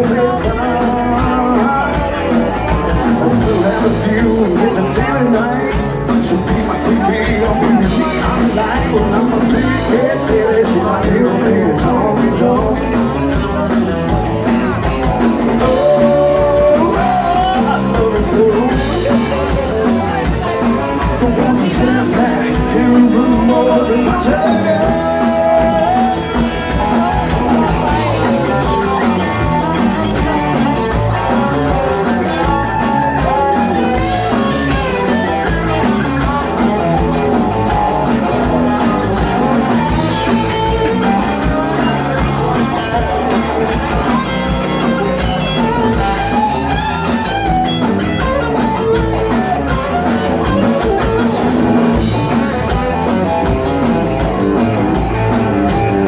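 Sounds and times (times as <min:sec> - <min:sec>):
bass and drums beat: 0:00.0 - 0:56.0
guitar solo with bending notes: 0:23.5 - 0:56.0.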